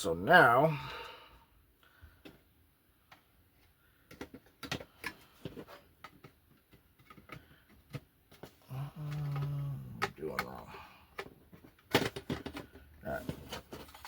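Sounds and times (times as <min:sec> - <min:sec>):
clicks and taps of small parts: 0:04.0 - 0:08.5.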